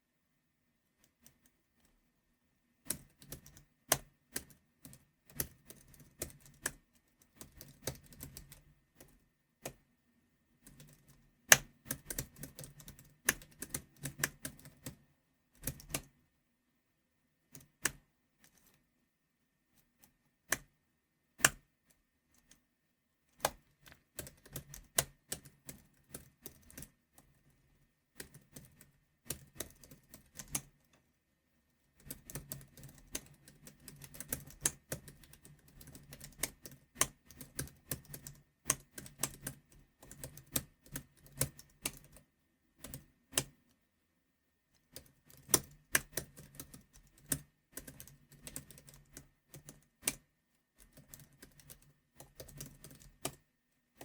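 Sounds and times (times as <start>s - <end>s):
typing on computer keyboard: 2.8s - 9.8s, 10.6s - 15.0s, 15.6s - 16.2s, 23.4s - 27.6s, 28.2s - 30.9s, 32.0s - 43.6s, 44.8s - 54.0s.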